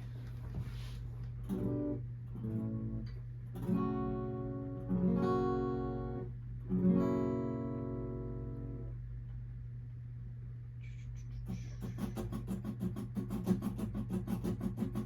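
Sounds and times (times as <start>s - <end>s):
guitar chords strummed: 1.5s - 9.0s.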